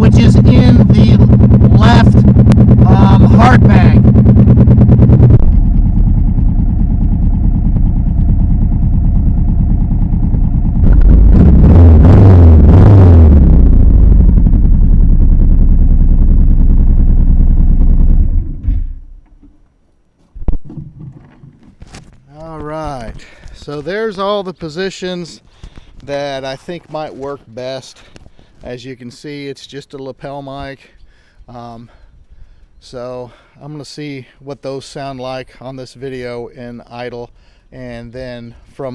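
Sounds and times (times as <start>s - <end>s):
motorcycle engine idling: 0.0s - 11.8s, 12.5s - 18.6s
throttle blips: 0.0s - 17.8s.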